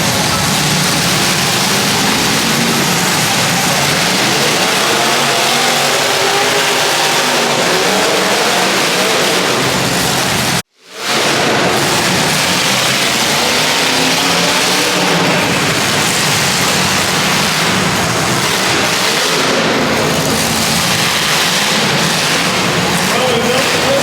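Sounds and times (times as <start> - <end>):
car engines revving: 0.0 - 24.0.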